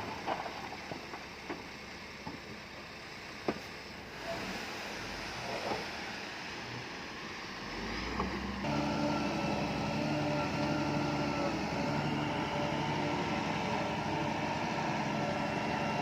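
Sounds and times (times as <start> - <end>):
diesel engine running: 6.9 - 16.0.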